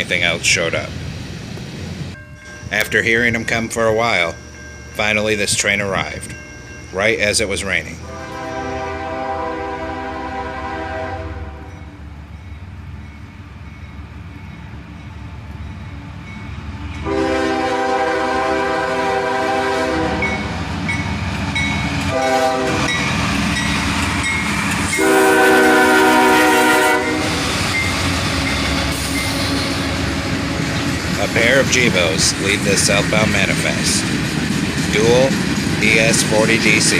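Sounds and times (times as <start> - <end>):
low rumble of train: 0.0 - 36.9
locomotive air horn blasts: 8.0 - 11.9, 17.0 - 20.6, 22.1 - 23.0, 24.9 - 27.5.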